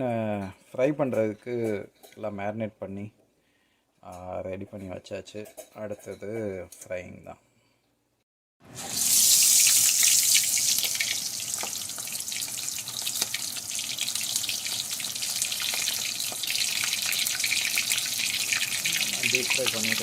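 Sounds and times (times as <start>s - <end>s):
fish sizzling in hot oil: 8.6s - 20.0s.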